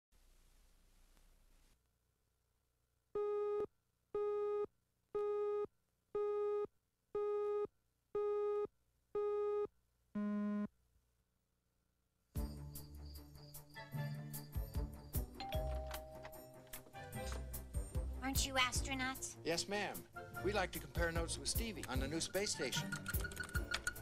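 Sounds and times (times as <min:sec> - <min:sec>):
music: 0:12.3 - 0:24.0.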